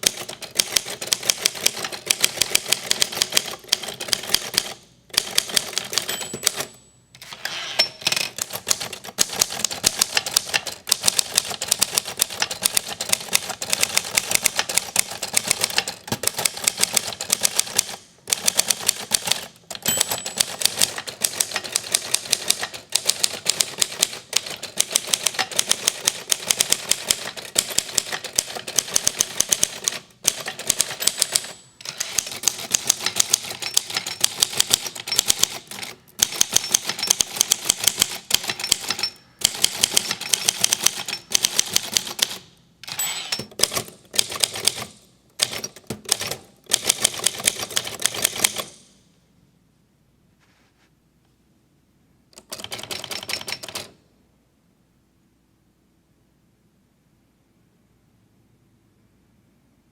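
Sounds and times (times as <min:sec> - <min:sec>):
manual typewriter typing: 0:00.0 - 0:07.4, 0:08.0 - 0:48.9, 0:52.4 - 0:54.0
typewriter jangle: 0:00.0 - 0:48.9, 0:52.4 - 0:54.0.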